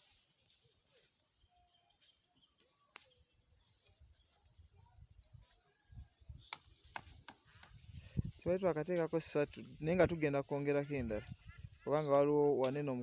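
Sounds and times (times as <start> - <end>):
faint click: 2.6 - 3.2.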